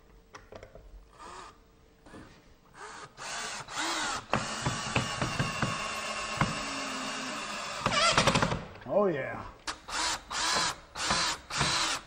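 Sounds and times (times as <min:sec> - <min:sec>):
cordless drill driving screw: 0:02.8 - 0:08.6, 0:09.7 - 0:12.0.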